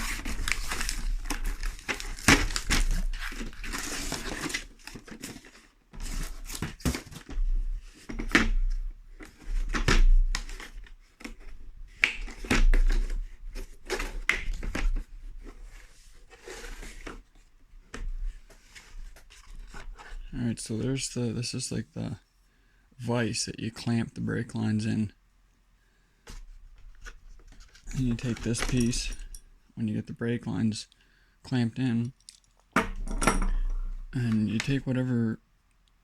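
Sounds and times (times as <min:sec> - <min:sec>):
packaging crinkling and tearing: 0:00.0 - 0:05.4.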